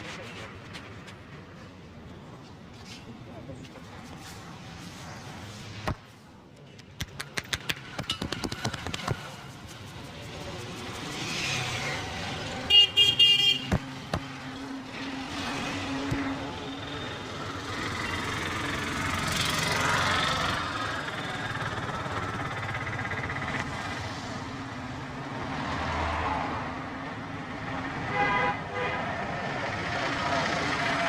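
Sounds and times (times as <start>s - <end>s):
hum of passing vehicles: 0.0s - 31.0s
vehicle horn toots: 12.7s - 13.8s, 28.1s - 29.0s.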